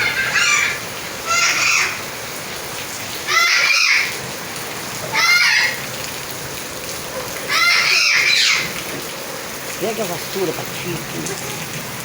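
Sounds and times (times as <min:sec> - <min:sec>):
steady rain hissing: 0:00.0 - 0:12.0.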